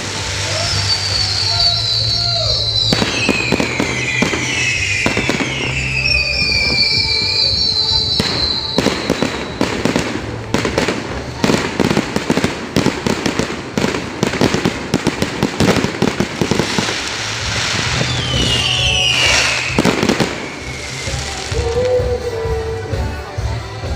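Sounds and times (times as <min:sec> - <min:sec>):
fireworks crackling bangs: 0:00.0 - 0:22.3
firework whistle falling in pitch: 0:00.1 - 0:09.8, 0:16.7 - 0:22.6.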